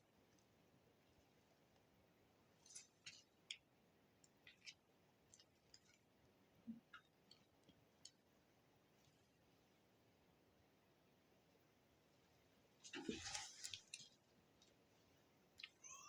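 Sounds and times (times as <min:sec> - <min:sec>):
faint high-pitched clicks: 0:15.6 - 0:16.0.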